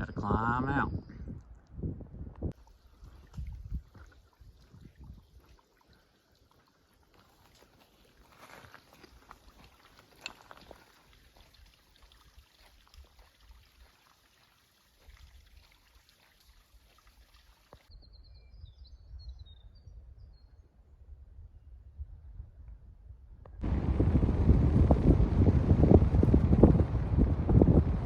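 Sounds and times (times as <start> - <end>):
wind buffeting microphone: 0.0 - 5.4, 21.2 - 28.0
footsteps on rocky trail: 6.9 - 11.6.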